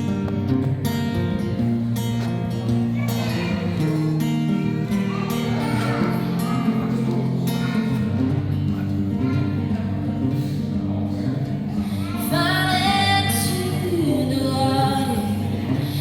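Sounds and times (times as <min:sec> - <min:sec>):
live instrumental accompaniment: 0:00.0 - 0:16.0
woman singing: 0:12.0 - 0:16.0.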